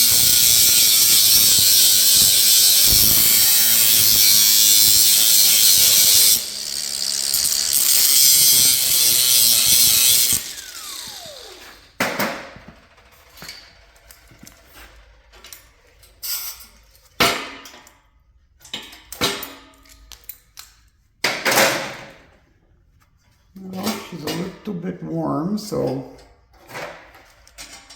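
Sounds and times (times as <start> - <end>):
electric grinder whining: 0.0 - 12.0
tools knocking and clattering: 12.0 - 22.3, 26.2 - 27.9.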